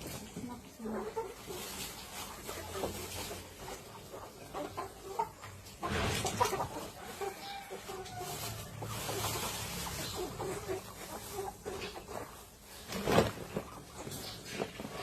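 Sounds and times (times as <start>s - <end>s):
chickens clucking: 0.0s - 15.0s
loud rustle: 8.0s - 15.0s.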